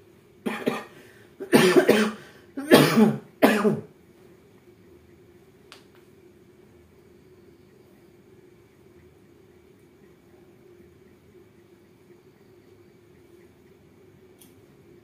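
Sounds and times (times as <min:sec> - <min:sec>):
person coughing: 0:00.5 - 0:03.9
small click: 0:05.7 - 0:06.1, 0:14.3 - 0:14.6.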